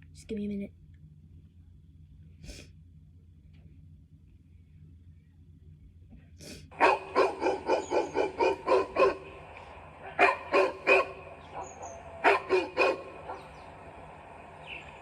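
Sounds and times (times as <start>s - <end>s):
dog barking: 6.7s - 14.8s.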